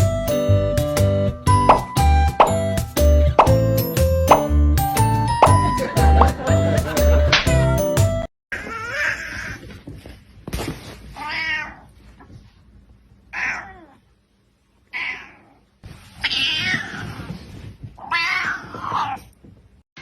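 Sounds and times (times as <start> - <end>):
sharp thump: 4.3 - 4.6
cat meowing and yowling: 13.3 - 14.0, 18.0 - 19.3.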